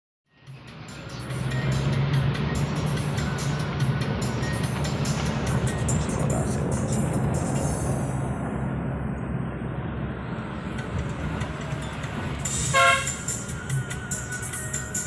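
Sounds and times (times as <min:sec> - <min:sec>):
vehicle engine rumbling: 0:00.3 - 0:15.0
short horn toot: 0:12.7 - 0:13.2.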